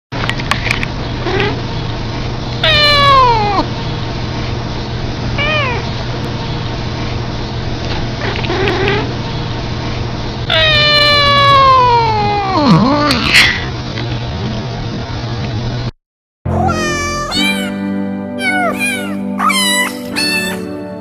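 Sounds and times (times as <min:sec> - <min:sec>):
cat yawning cries: 0:02.6 - 0:03.7, 0:10.5 - 0:12.8, 0:16.5 - 0:20.8.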